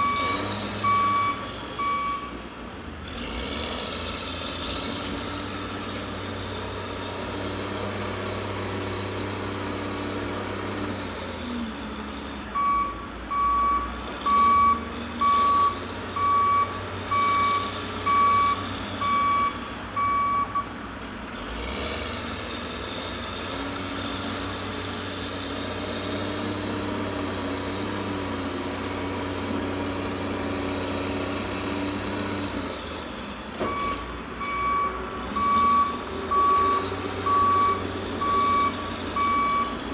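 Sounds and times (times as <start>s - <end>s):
backup alarm beeping: 0.0s - 2.3s, 12.6s - 20.6s, 33.7s - 39.8s
heavy diesel machinery running: 0.0s - 39.9s.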